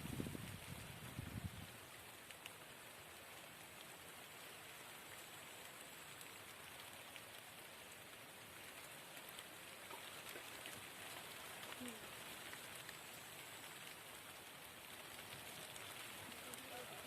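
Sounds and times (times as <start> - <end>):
light rain falling: 0.0 - 17.0.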